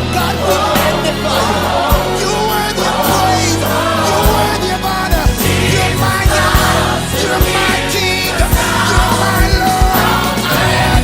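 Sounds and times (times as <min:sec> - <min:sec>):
bass: 0:00.0 - 0:11.0
gospel choir singing: 0:00.0 - 0:11.0
drum hits: 0:04.2 - 0:11.0.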